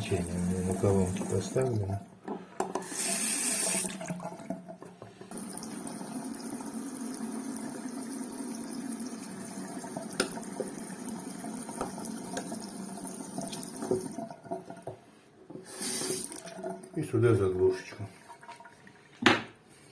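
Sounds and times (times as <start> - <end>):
tap water running into sink: 0.0 - 19.5.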